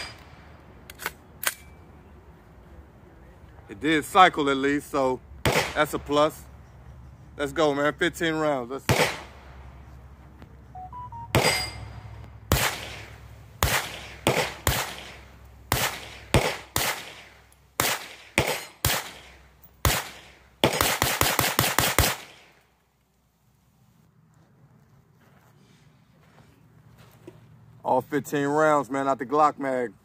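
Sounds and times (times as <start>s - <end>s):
pistol gunshots: 5.4s - 6.3s, 8.8s - 9.6s, 11.3s - 22.6s.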